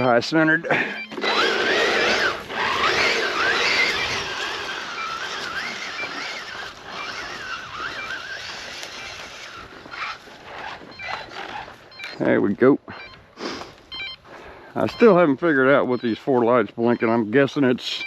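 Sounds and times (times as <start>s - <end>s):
tyres spinning in sand: 1.0s - 11.7s
electric motor whine: 1.1s - 11.7s.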